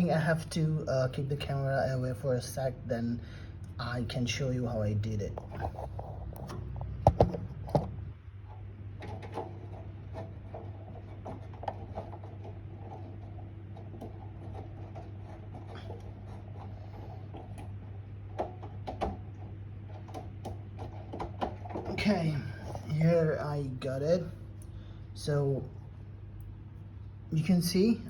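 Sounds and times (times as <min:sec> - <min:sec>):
steady low hum: 0:00.0 - 0:28.0
faint clicks and rattles: 0:05.3 - 0:23.0.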